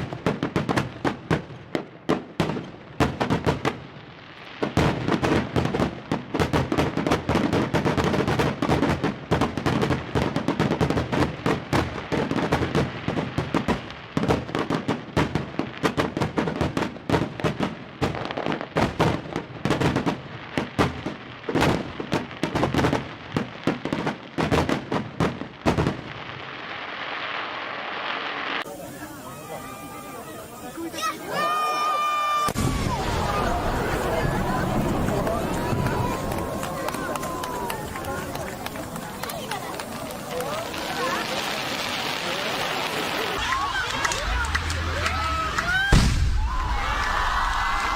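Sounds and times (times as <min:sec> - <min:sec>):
fireworks bangs and crackles: 0:00.0 - 0:47.9
steady hiss: 0:26.7 - 0:45.1.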